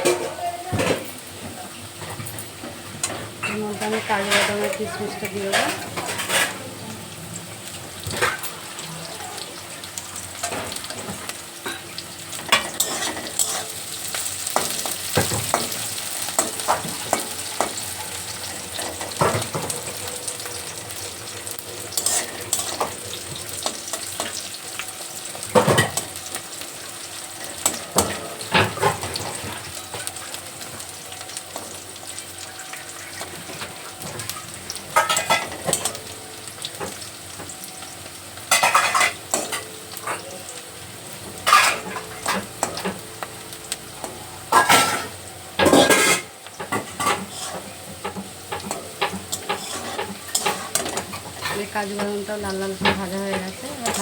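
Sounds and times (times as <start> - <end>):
nuts frying in hot oil: 0.0 - 54.0
spatula scraping a pan: 3.4 - 4.8, 12.4 - 24.8, 41.4 - 43.0, 44.5 - 51.8.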